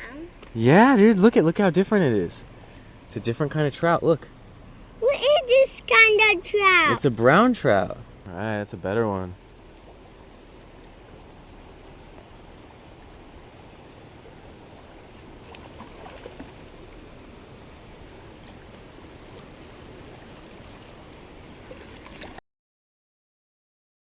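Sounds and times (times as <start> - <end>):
faint ticks: 0.0 - 0.6, 9.4 - 22.4
creek water over rocks: 0.0 - 22.4.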